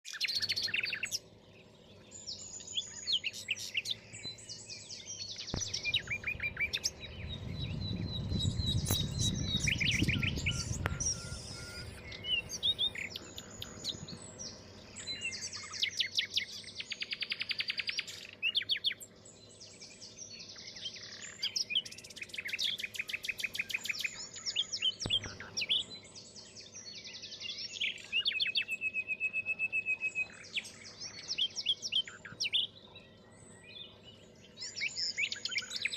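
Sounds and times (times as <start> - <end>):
small birds chirping and trilling: 0.0 - 35.9
low rumbling noise: 5.6 - 15.2.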